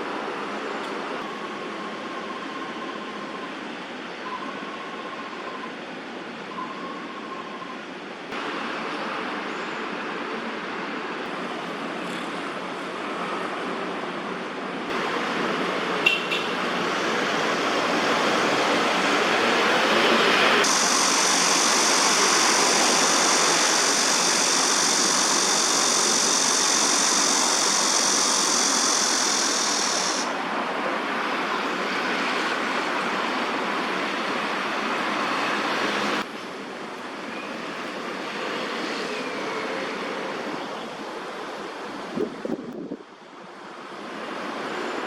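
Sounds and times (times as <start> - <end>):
city traffic: 0.0 - 45.0
high steady hiss: 12.8 - 37.3.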